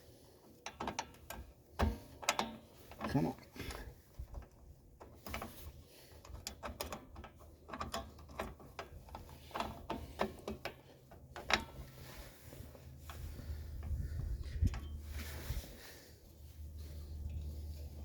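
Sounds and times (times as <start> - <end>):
low steady hum: 0.0 - 18.0
metallic clicks of brake hardware: 0.5 - 12.1, 13.8 - 15.1.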